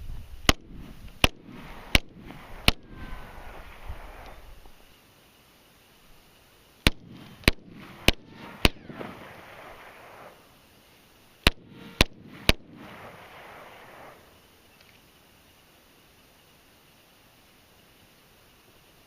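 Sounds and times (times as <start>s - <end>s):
pistol shots with echo: 6.8s - 10.5s, 11.4s - 14.3s.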